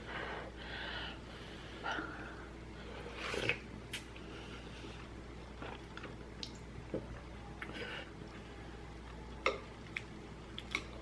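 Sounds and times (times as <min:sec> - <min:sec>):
wet squishing and chewing: 0:05.5 - 0:07.7, 0:09.0 - 0:11.0.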